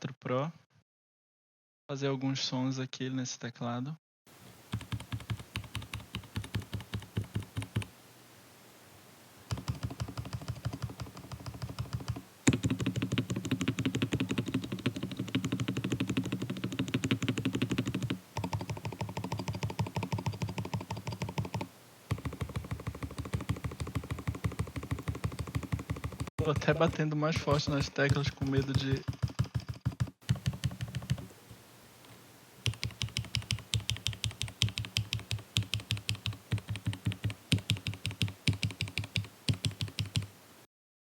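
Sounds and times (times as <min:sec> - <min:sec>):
mechanical keyboard keystrokes clicking: 0:04.7 - 0:07.9, 0:09.5 - 0:31.3, 0:32.6 - 0:40.3.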